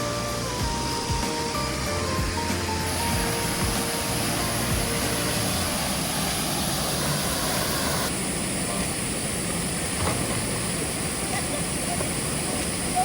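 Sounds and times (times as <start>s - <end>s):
waterfall roaring: 0.0s - 13.0s.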